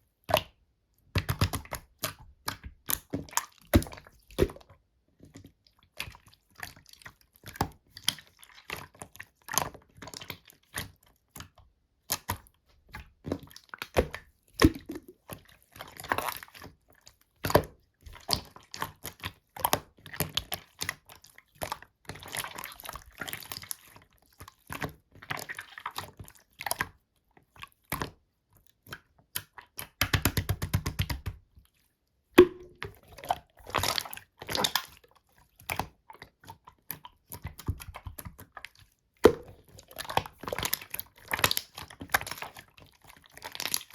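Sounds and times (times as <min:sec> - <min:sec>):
slime squished by hand: 0:32.4 - 0:35.0.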